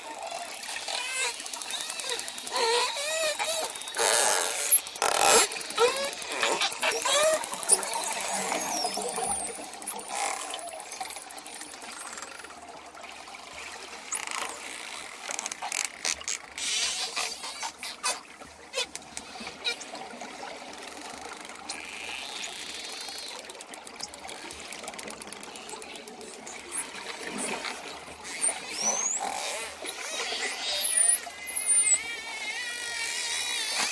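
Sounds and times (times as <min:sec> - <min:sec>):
water noise: 0:00.0 - 0:33.9
dolphin clicks: 0:00.3 - 0:12.5
dolphins whistling: 0:01.0 - 0:11.8, 0:26.7 - 0:33.9.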